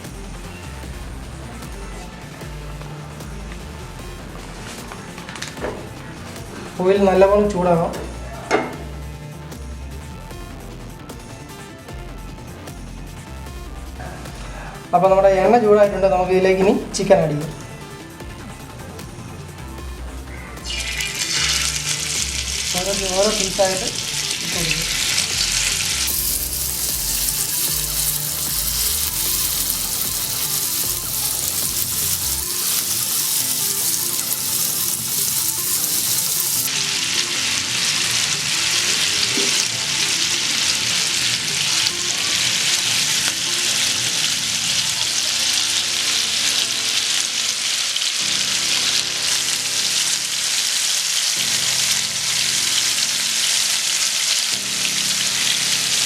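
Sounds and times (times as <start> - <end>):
chicken frying in oil: 20.7 - 56.0.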